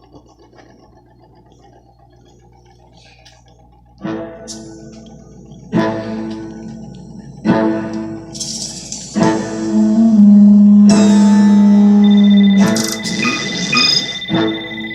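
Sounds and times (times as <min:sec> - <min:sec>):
guitar chords: 0:09.2 - 0:14.9.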